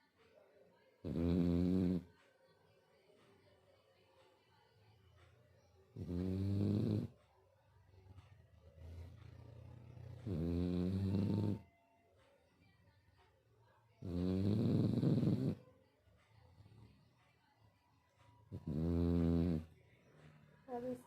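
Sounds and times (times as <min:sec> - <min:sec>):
puppy snoring: 0:01.0 - 0:02.2, 0:05.9 - 0:07.2, 0:08.5 - 0:11.7, 0:14.0 - 0:15.6, 0:18.5 - 0:19.8.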